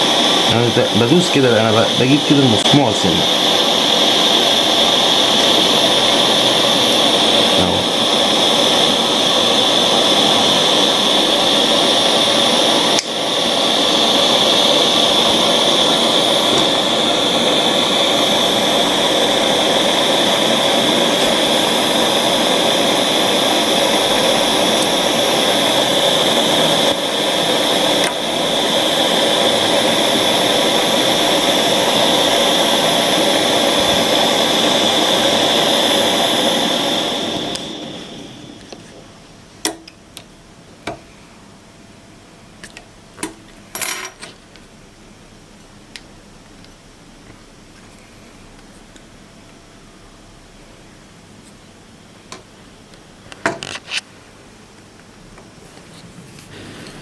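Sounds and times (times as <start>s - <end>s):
steady rushing hiss: 0.0s - 39.0s, 55.8s - 57.0s.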